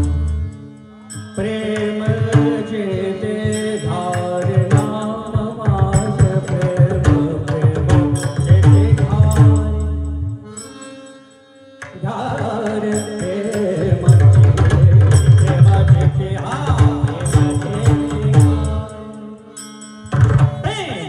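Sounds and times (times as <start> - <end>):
hand drum playing: 4.2 - 10.1, 13.9 - 18.8
devotional singing: 11.9 - 14.4.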